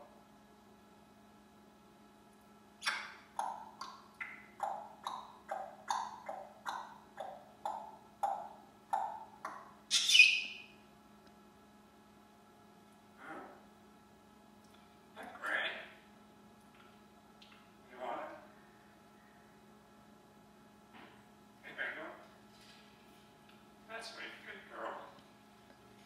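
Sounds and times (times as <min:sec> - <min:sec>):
parrot clicking calls: 0:02.8 - 0:10.5.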